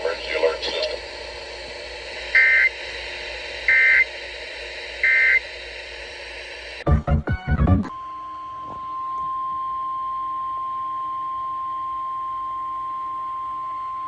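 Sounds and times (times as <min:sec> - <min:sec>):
steady alarm tone: 0:00.0 - 0:06.8.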